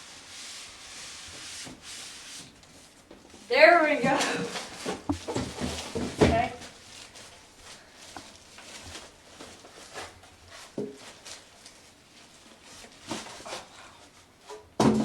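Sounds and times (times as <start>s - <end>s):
plastic wrapping rustling: 1.7s - 14.3s.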